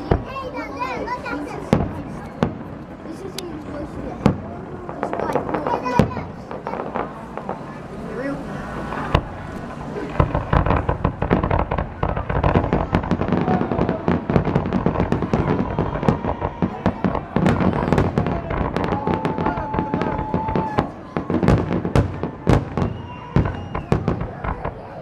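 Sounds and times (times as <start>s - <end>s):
fireworks bangs and crackles: 0.0s - 25.0s
steady whistling tone: 22.8s - 24.1s.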